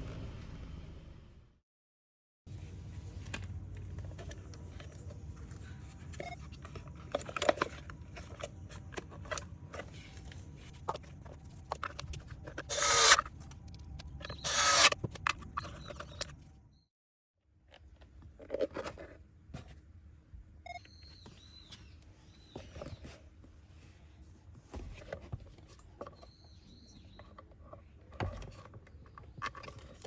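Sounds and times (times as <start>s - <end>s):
parts clicking and knocking: 3.2s - 16.6s.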